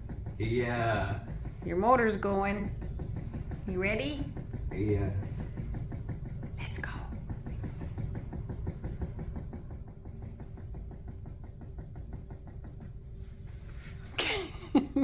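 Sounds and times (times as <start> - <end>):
low hum: 0.0 - 15.0
rapid even pulsing: 0.0 - 15.0.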